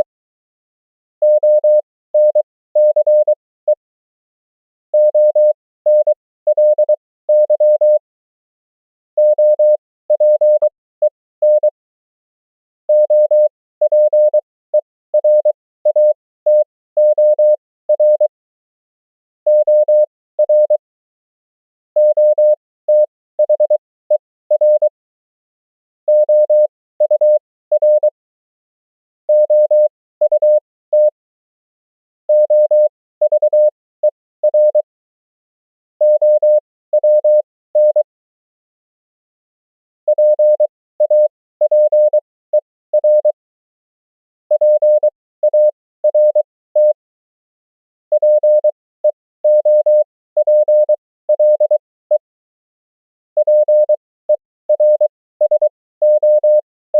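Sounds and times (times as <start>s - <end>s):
morse code beeps: 1.2s - 3.8s, 5.0s - 8.0s, 9.2s - 10.7s, 11.4s - 11.8s, 12.9s - 14.4s, 15.2s - 18.3s, 19.5s - 20.8s, 22.0s - 24.9s, 26.1s - 28.2s, 29.3s - 31.2s, 32.3s - 34.9s, 36.0s - 38.1s, 40.1s - 43.4s, 44.5s - 47.0s, 48.1s - 52.2s, 53.4s - 56.7s.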